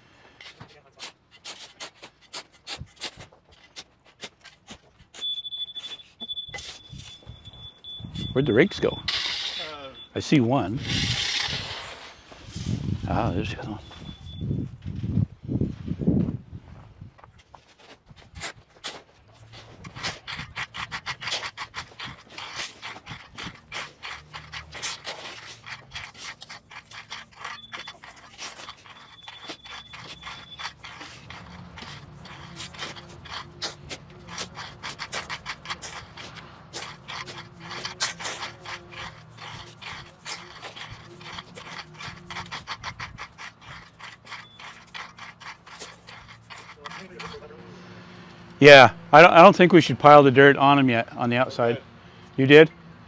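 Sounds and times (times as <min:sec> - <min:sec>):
rakes scraping through gravel: 0:08.3 - 0:14.3, 0:17.4 - 0:51.8.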